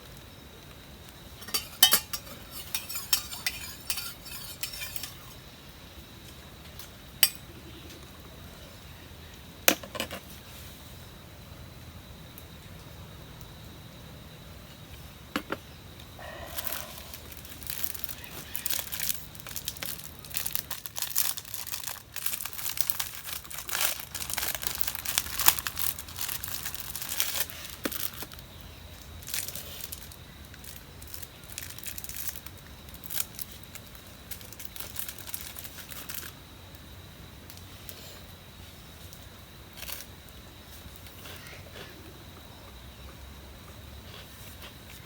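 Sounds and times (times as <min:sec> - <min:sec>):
crinkling and rustling: 0:16.5 - 0:28.4.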